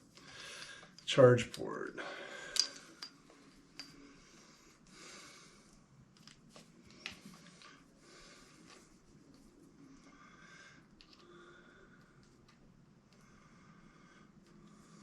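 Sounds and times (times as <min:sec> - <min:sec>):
cable rustling: 0:06.1 - 0:09.8.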